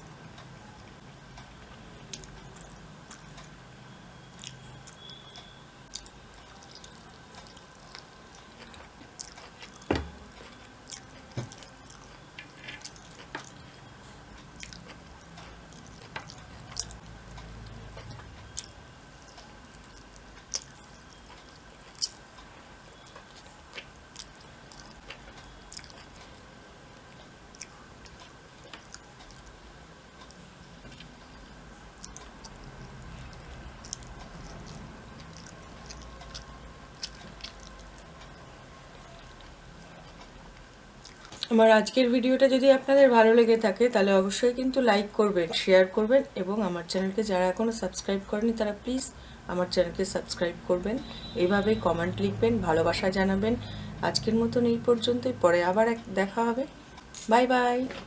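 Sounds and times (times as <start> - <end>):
faint steady hum: 0.0 - 58.0
person chewing food: 2.1 - 3.6, 4.4 - 5.2, 5.9 - 26.4, 27.1 - 38.4, 39.1 - 41.5.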